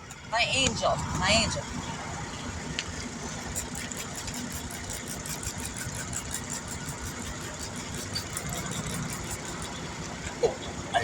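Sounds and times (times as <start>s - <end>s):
vehicle engine idling: 0.0s - 11.0s.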